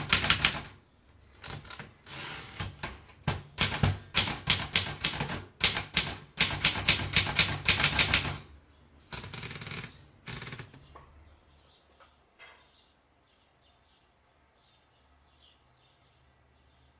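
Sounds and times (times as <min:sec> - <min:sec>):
typewriter keystrikes: 0:00.0 - 0:00.8, 0:02.5 - 0:08.5.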